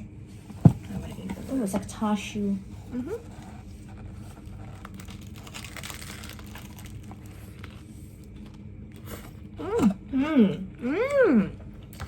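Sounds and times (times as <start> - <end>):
low steady hum: 0.0 - 12.0
paper wrapper crinkling: 3.3 - 9.0.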